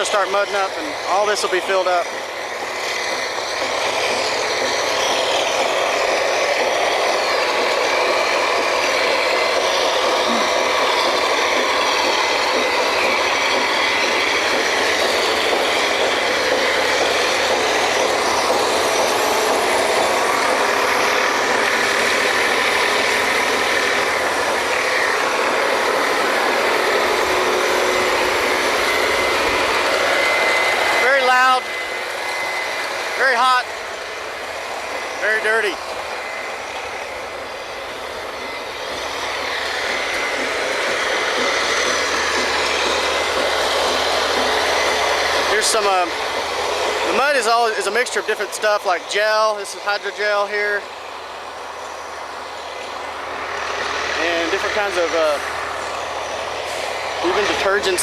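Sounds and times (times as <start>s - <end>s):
heavy drilling rig machinery: 0.0s - 58.0s.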